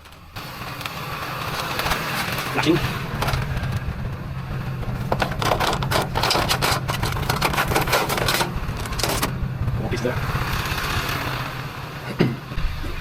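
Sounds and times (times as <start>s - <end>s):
vehicle engine idling: 0.0s - 13.0s
wood and junk clattering: 1.4s - 9.4s.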